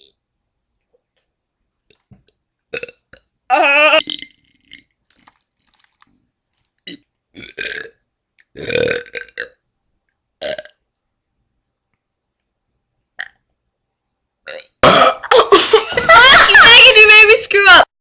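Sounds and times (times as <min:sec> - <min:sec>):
person burping: 0:02.8 - 0:04.4, 0:06.9 - 0:07.9, 0:08.6 - 0:09.5, 0:10.4 - 0:10.7, 0:14.5 - 0:15.5.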